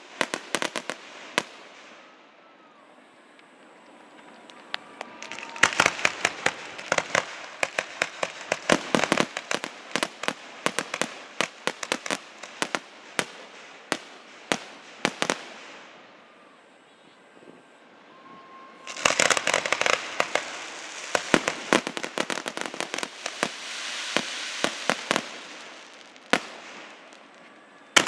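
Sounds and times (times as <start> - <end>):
fireworks bangs: 0.0 - 28.0
fireworks crackling: 0.0 - 28.0.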